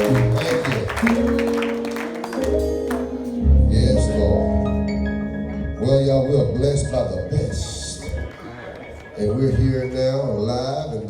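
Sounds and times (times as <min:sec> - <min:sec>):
church keyboard music: 0:00.0 - 0:11.0.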